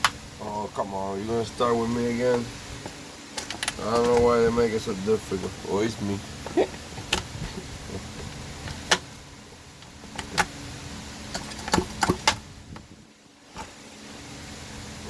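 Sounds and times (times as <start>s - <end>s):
faint steady hum: 0.0s - 15.0s
chainsaw parts clicking and knocking: 2.3s - 4.3s, 6.4s - 9.1s, 9.8s - 10.6s, 11.3s - 12.4s.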